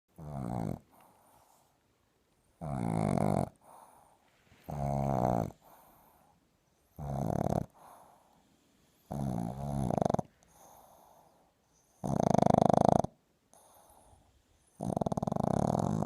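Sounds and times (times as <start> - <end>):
puppy snoring: 0.1 - 1.7, 2.6 - 16.0
faint breath: 0.9 - 1.9, 3.6 - 4.7, 5.5 - 6.9, 7.7 - 9.2, 10.2 - 12.0, 13.5 - 14.7.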